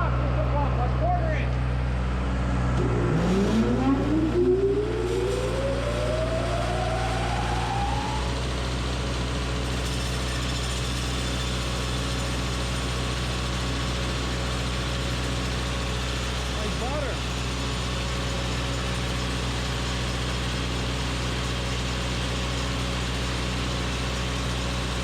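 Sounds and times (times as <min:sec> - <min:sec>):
sawmill engine drone: 0:00.0 - 0:25.0
saw whine spinning up: 0:01.8 - 0:11.2.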